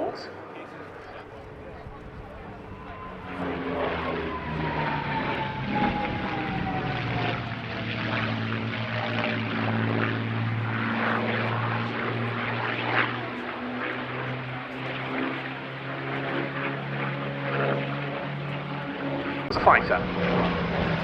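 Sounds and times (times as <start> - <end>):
propeller plane engine passing: 0.0 - 21.0
high tone falling in pitch: 2.4 - 8.3.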